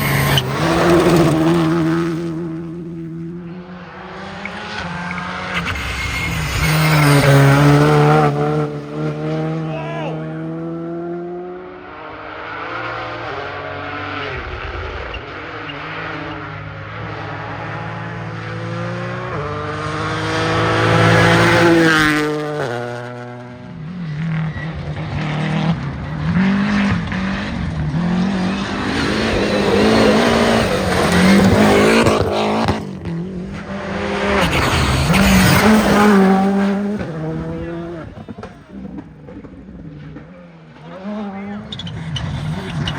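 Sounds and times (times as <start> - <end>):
rally car engine revving: 0.0 - 42.9
tyre noise: 26.3 - 42.9.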